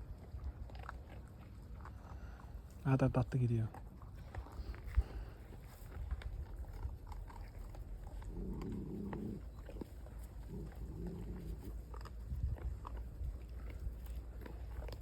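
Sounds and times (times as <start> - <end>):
animal low drawn-out calls: 7.4 - 12.3.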